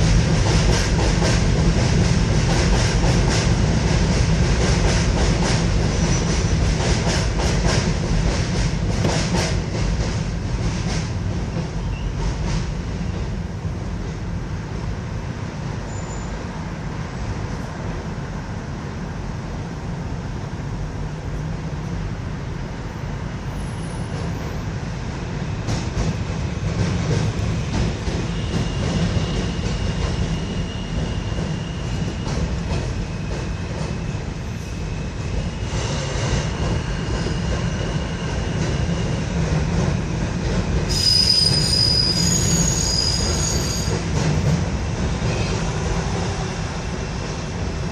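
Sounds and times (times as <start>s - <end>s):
wheels clacking on rails: 0.0s - 16.5s, 23.6s - 47.9s
subway train rumbling: 0.0s - 47.9s
wheel squeals: 15.9s - 16.4s, 40.9s - 44.0s.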